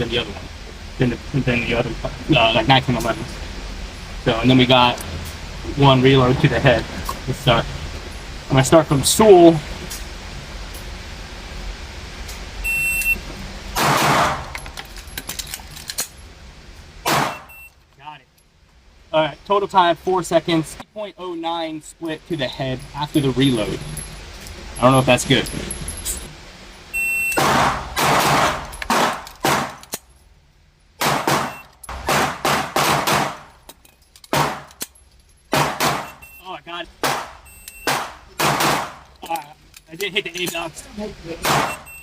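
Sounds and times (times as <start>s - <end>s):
shot timer beep: 12.6s - 13.2s, 27.0s - 27.4s, 31.4s - 31.7s, 36.0s - 36.5s, 37.4s - 38.0s, 41.6s - 42.0s
metallic target hits: 17.1s - 17.5s.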